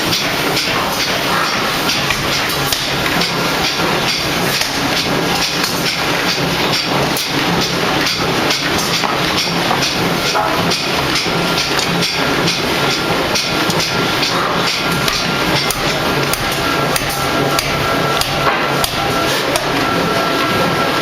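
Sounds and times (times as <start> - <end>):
machine noise: 0.0 - 21.0.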